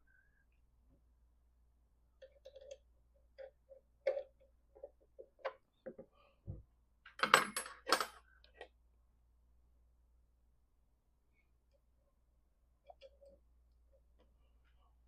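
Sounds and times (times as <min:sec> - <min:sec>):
metal parts clicking and knocking: 0:07.1 - 0:08.2.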